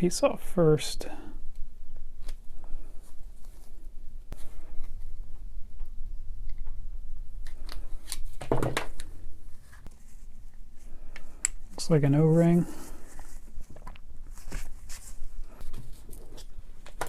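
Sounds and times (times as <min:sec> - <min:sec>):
handling sounds: 0:07.4 - 0:17.0.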